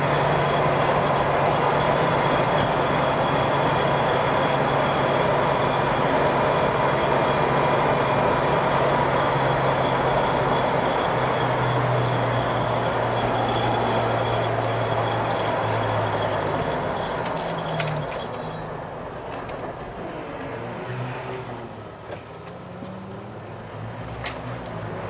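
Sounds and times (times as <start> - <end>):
car engine drone: 0.0 - 25.0.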